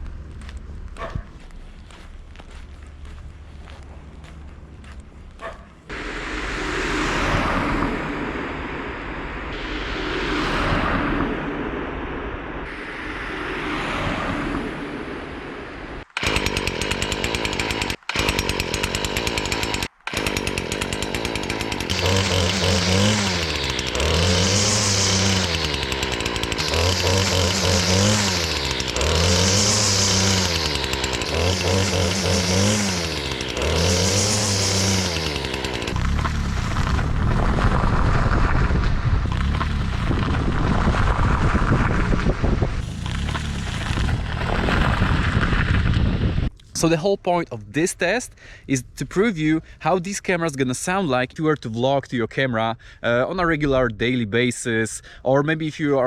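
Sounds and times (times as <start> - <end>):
whooshing noise: 5.8 - 16.1
small motor rising and falling: 5.9 - 12.0, 12.6 - 46.5.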